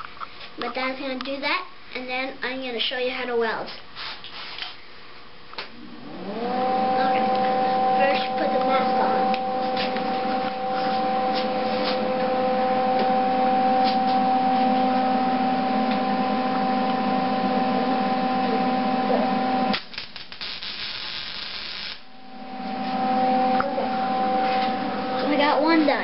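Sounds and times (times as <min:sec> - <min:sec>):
welder electrical hum: 0:00.0 - 0:26.0
welding arc crackle: 0:19.7 - 0:22.1.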